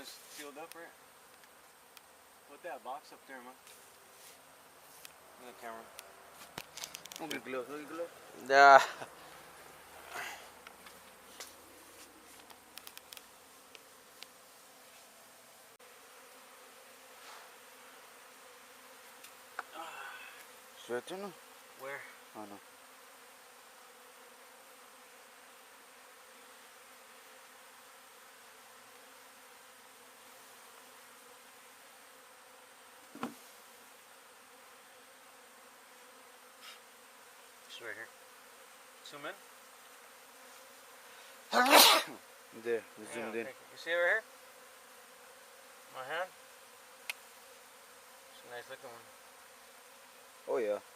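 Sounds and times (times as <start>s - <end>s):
honey bees buzzing: 0.0s - 50.9s
small clicks: 12.4s - 14.3s.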